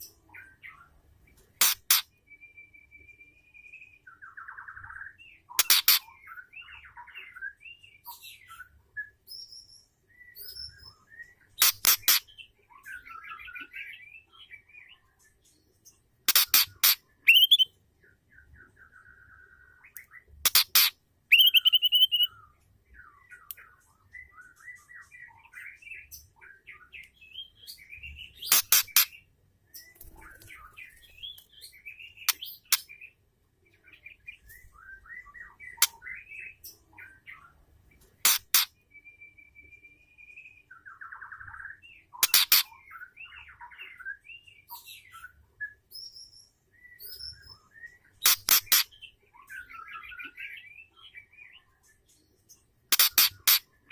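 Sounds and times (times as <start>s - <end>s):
bird chirps and whistles: 16.3s - 17.7s, 20.4s - 22.4s
bird harsh calls: 16.3s - 17.7s, 20.4s - 22.4s, 42.1s - 43.0s, 52.9s - 53.7s.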